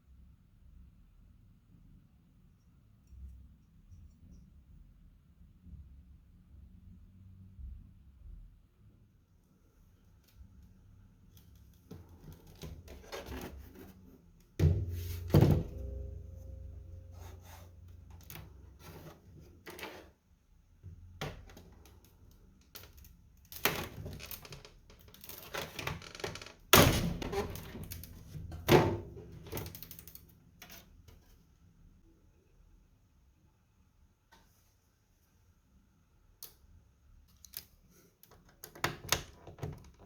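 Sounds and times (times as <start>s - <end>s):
small clicks and rustles: 10.1s - 14.2s, 21.4s - 26.7s, 29.4s - 31.5s, 36.4s - 40.0s.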